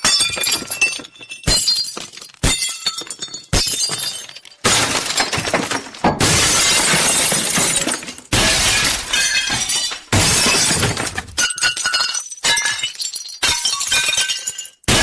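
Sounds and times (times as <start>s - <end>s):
glass shattering: 0.0s - 15.0s.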